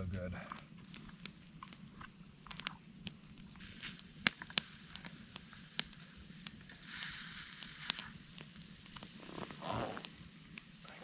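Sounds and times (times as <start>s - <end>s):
campfire crackling: 0.0s - 11.0s
sharp pops of fire: 0.0s - 11.0s.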